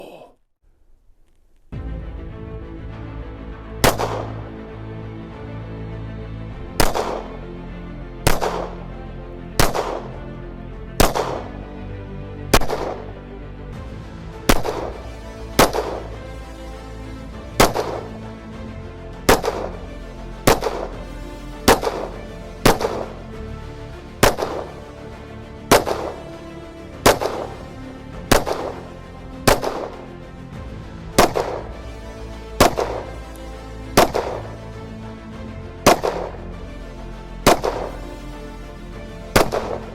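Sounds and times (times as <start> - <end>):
background music: 1.7 - 39.9
gunshots: 3.8 - 4.4, 6.8 - 7.3, 8.3 - 8.8, 9.6 - 10.2, 11.0 - 11.5, 12.5 - 13.1, 14.5 - 15.0, 15.6 - 16.2, 17.6 - 18.1, 19.3 - 19.8, 20.5 - 20.9, 21.7 - 23.1, 24.2 - 24.7, 25.7 - 26.3, 27.0 - 27.6, 28.2 - 28.8, 29.5 - 30.0, 31.2 - 31.7, 32.6 - 33.3, 34.0 - 34.5, 35.8 - 36.4, 37.4 - 38.0, 39.4 - 39.9.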